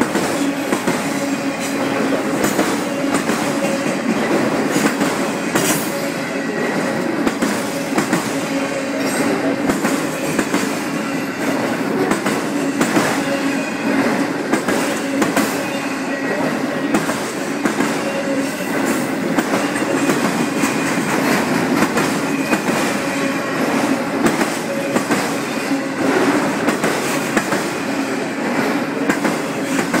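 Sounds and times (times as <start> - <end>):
train wheels rumbling on rail: 0.0 - 30.0
wheels clacking over rail joints: 16.9 - 30.0.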